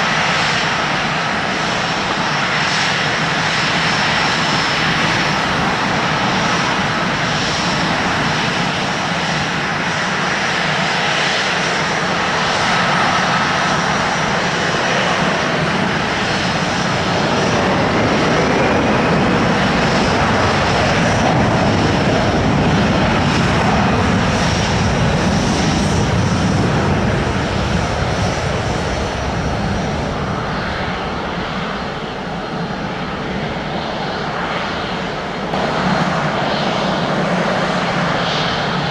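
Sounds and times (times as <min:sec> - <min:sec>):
jet engines running: 0:00.0 - 0:38.9
faint high whine: 0:02.4 - 0:10.3, 0:13.6 - 0:19.1.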